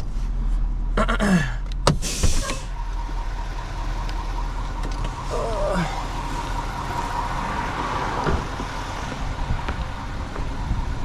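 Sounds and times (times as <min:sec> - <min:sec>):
car engine rumble: 0:00.0 - 0:11.0
faint steady whine: 0:02.3 - 0:11.0.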